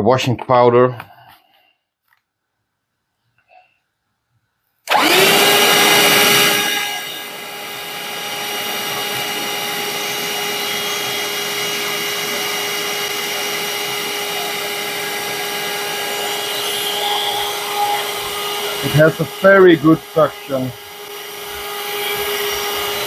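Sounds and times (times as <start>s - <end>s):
handheld vacuum cleaner running: 4.9s - 23.0s.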